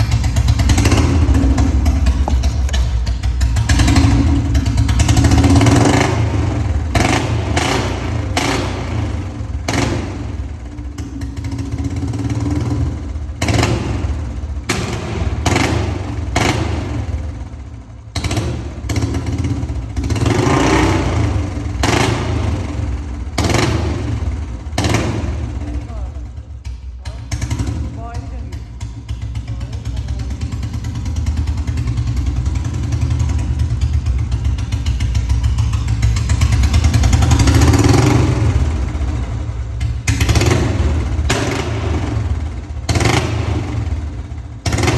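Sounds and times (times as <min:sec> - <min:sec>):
sharp exhaust pops: 0:00.0 - 0:04.4
motorcycle engine revving: 0:00.0 - 0:44.9.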